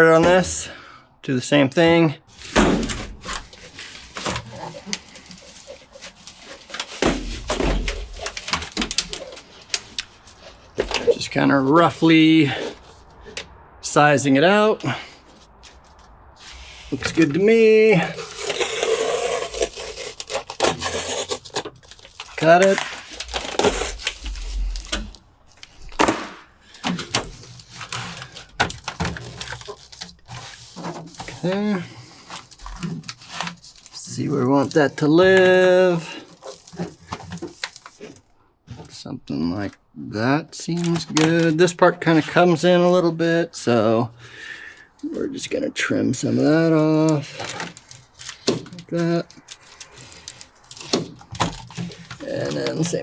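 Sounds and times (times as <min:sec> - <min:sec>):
sound-deadening mat rustling: 0:02.3 - 0:13.2.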